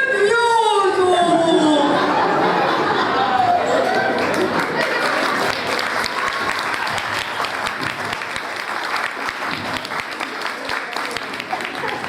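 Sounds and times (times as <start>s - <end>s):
audience applauding: 3.2s - 12.0s.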